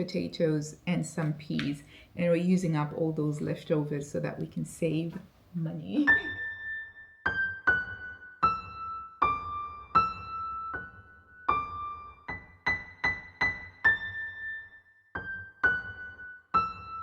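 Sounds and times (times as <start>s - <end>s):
slow electric piano melody: 6.0s - 17.0s.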